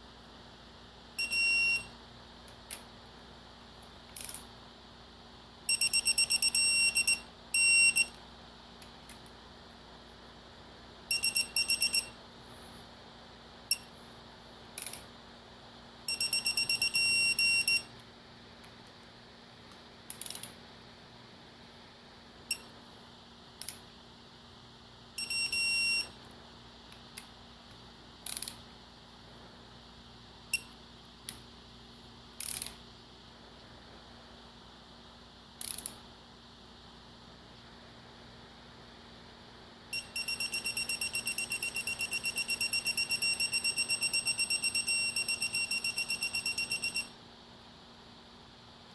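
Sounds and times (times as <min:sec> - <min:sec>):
torque wrench beeping: 0:11.1 - 0:12.1, 0:40.0 - 0:47.1.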